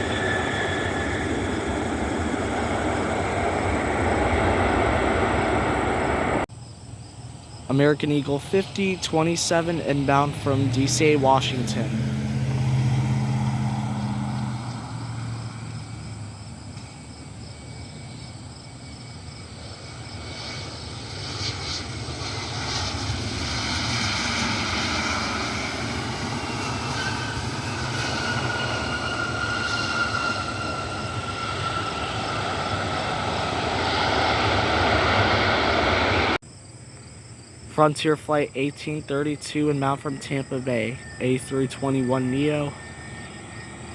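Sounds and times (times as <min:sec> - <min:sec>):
jet airliner engines: 0:00.0 - 0:43.9
road vehicle engine hum: 0:08.6 - 0:18.5, 0:21.8 - 0:36.4
high whine falling in pitch: 0:38.2 - 0:43.9.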